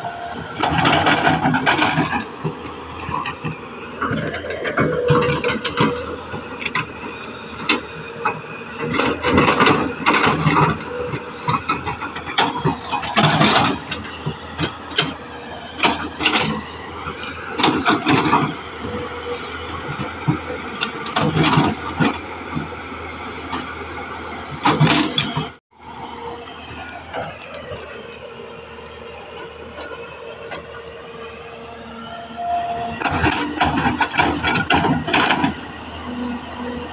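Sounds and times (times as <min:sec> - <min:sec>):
excavator diesel engine running: 0:00.0 - 0:36.9
digging knocks and clatter: 0:00.4 - 0:22.8, 0:24.5 - 0:25.6, 0:33.0 - 0:36.8.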